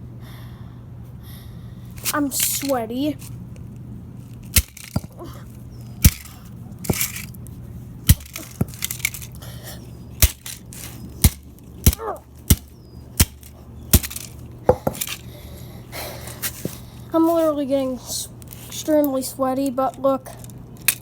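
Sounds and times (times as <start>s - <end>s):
plastic toy gun cracking and breaking: 4.4s - 5.3s, 6.0s - 7.3s, 8.1s - 9.5s, 10.2s - 15.2s.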